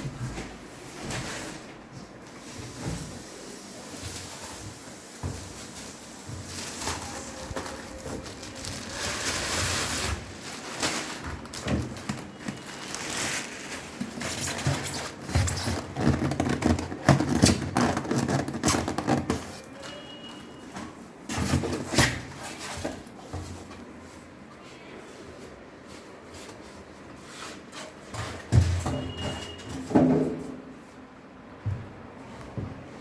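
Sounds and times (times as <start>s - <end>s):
packaging knocks and scrapes: 4.1s - 20.0s.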